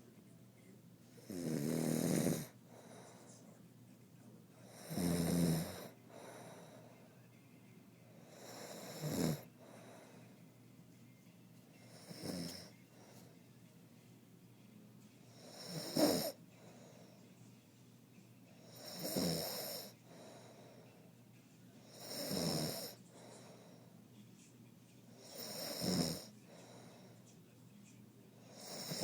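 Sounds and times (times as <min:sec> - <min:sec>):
man snoring: 0:01.2 - 0:02.8, 0:04.6 - 0:06.8, 0:08.3 - 0:10.1, 0:11.9 - 0:12.7, 0:15.4 - 0:16.4, 0:18.7 - 0:20.5, 0:21.9 - 0:23.6, 0:25.2 - 0:26.9, 0:28.5 - 0:29.0.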